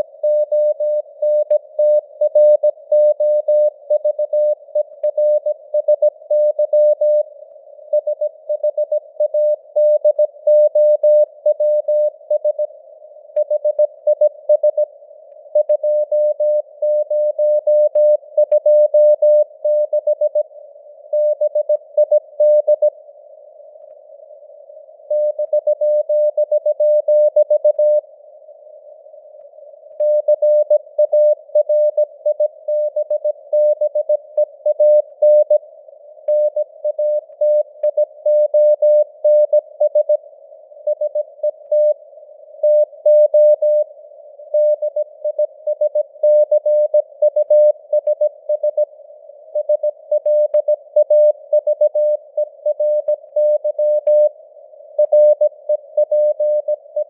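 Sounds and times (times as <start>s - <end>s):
morse code tone: 55.0s - 56.8s.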